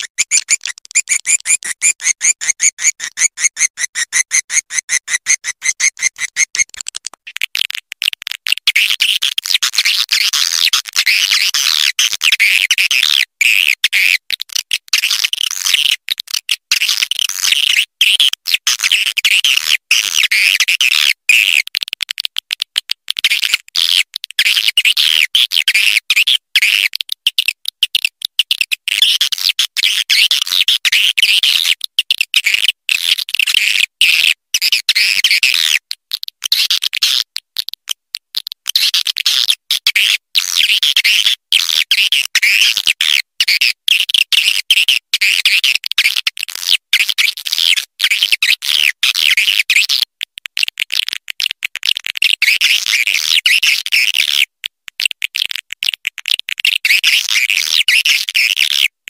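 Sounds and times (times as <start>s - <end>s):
swiftlets twittering: 0.0s - 6.8s.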